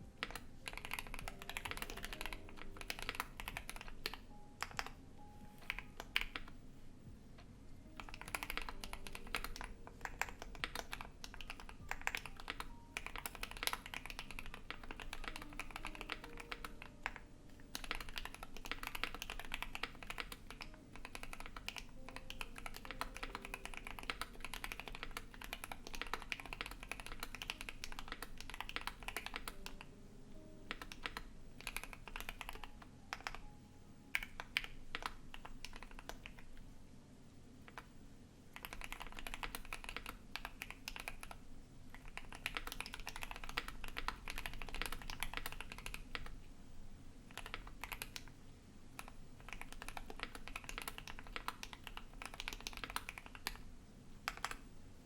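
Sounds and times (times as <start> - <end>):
computer fan hum: 0.0 - 55.0
mechanical keyboard key clacks: 8.0 - 29.9, 38.6 - 46.3, 49.0 - 53.6.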